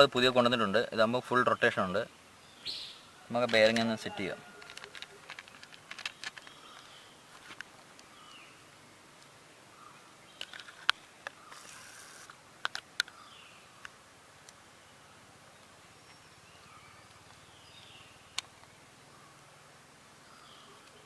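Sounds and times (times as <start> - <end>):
faint bird chirps: 1.3 - 5.3, 20.2 - 21.0.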